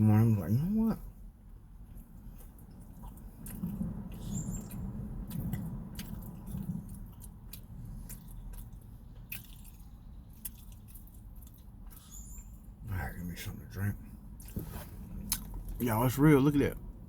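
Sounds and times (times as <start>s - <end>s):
low steady rumble: 0.0s - 17.0s
person chewing food: 1.8s - 12.8s, 14.3s - 15.8s.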